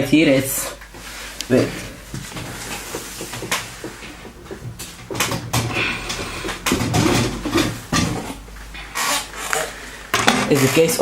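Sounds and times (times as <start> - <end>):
computer case parts knocking and rattling: 1.6 - 9.0, 10.1 - 11.0.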